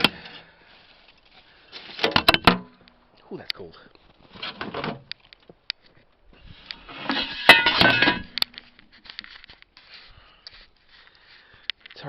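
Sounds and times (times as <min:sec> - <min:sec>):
scrap metal clanking in a bin: 0:06.9 - 0:08.4.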